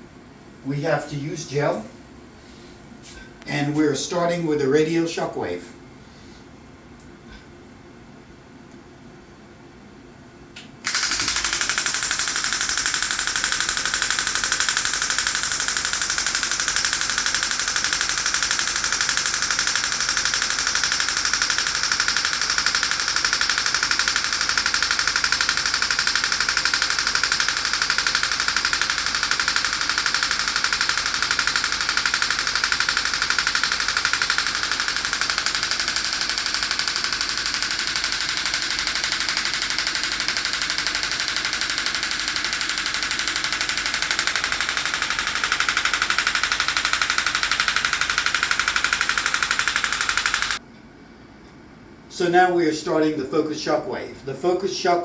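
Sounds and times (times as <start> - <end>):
rapid rattle of pneumatic clicks: 10.6 - 50.6.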